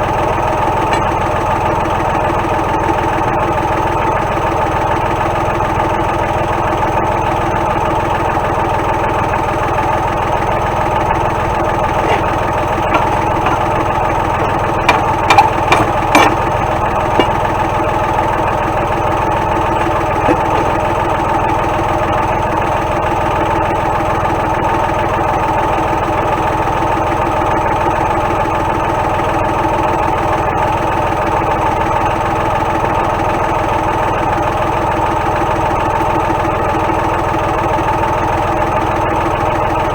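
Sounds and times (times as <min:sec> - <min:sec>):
tractor engine idling: 0:00.0 - 0:39.9
sharp knocks: 0:00.8 - 0:01.3, 0:11.9 - 0:17.7, 0:19.7 - 0:21.0.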